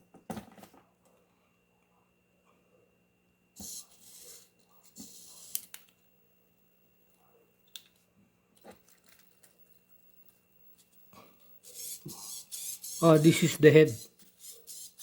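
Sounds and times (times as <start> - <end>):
servo motor whirring: 3.6 - 5.7, 11.6 - 15.0
servo motor clicks: 3.6 - 5.9, 11.6 - 15.0.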